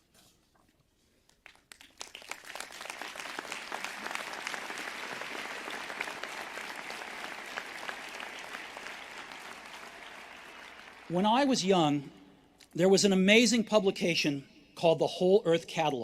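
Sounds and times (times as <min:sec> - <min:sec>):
audience applauding: 0:01.4 - 0:11.5.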